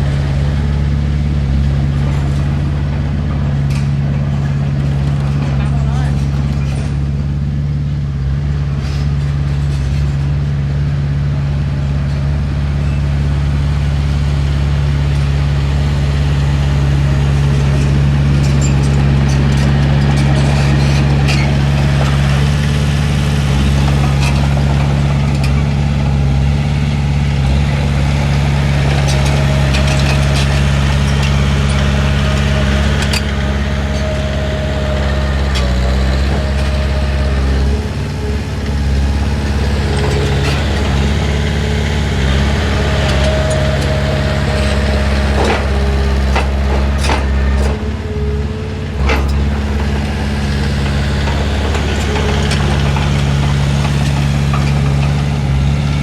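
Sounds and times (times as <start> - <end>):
diesel engine running: 0.0 - 56.0
clanks and knocks: 17.4 - 26.4, 27.4 - 55.8.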